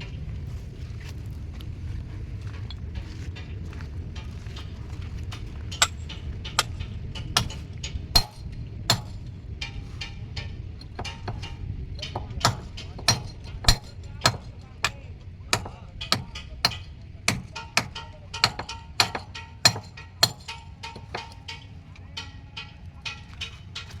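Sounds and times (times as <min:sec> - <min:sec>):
steady low rumble: 0:00.0 - 0:24.0
sharp metallic knocks: 0:05.7 - 0:24.0.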